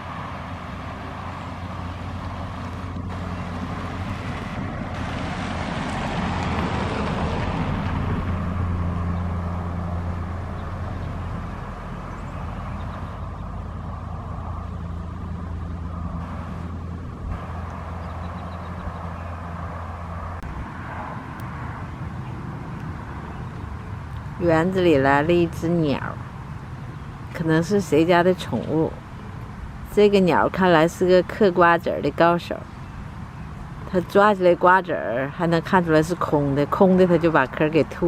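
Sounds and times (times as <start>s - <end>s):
low mechanical hum: 0.0s - 34.5s
vehicle passing: 0.0s - 38.0s.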